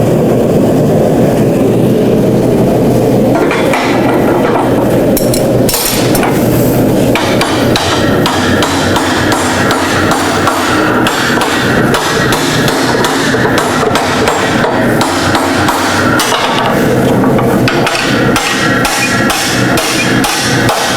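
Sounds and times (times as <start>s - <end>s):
hammer striking hot steel: 5.2s - 6.4s, 7.1s - 20.9s.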